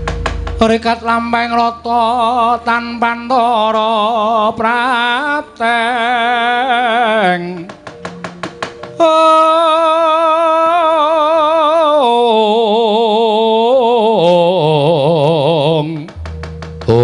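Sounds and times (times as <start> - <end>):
sharp knocks: 0.0 - 4.0, 7.3 - 9.2, 15.8 - 17.0
person singing with vibrato: 0.6 - 7.8, 9.0 - 16.3.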